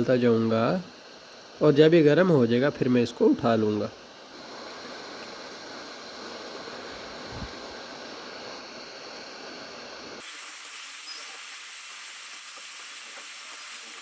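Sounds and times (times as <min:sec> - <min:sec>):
hot air gun hissing: 0:00.0 - 0:14.0.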